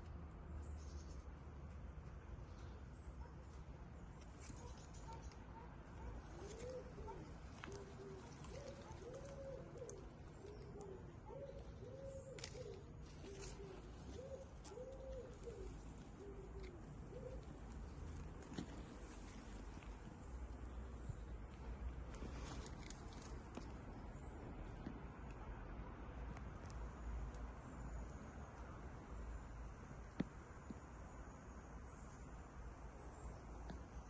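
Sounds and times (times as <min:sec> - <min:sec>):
faint low rumble: 0:00.0 - 0:34.0
bird cooing: 0:05.5 - 0:18.7.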